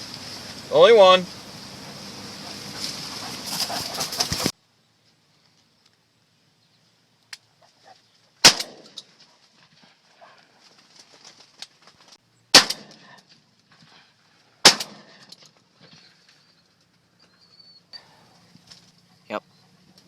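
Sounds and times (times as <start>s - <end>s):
shotgun shots with echo: 8.4s - 9.0s, 12.5s - 13.1s, 14.6s - 15.3s.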